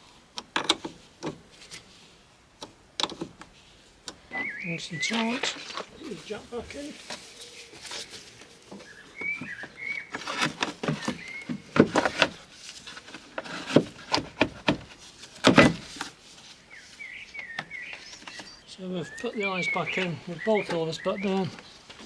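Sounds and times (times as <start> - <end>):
birds chirping: 3.0 - 22.0
car jack knocks and clunks: 13.6 - 16.0.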